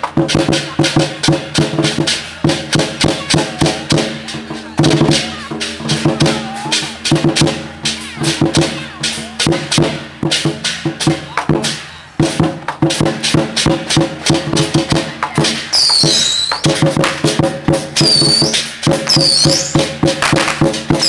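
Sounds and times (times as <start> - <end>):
percussion band drums gongs cymbals: 0.0 - 21.0.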